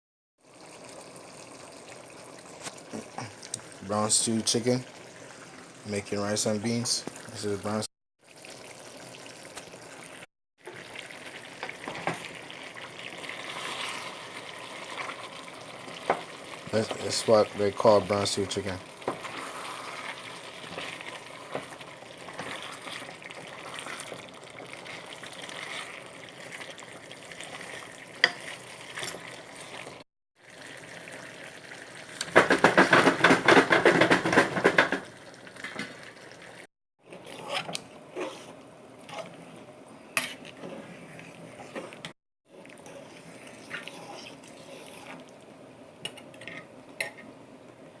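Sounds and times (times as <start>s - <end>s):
stew simmering and sizzling: 0.4s - 48.0s
rapid clatter of stirring: 18.2s - 30.0s, 32.2s - 35.9s.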